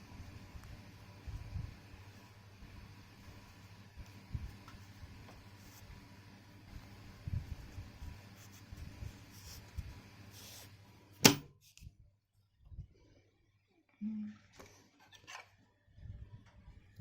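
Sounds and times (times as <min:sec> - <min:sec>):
sharp loud click: 0:11.2 - 0:11.5.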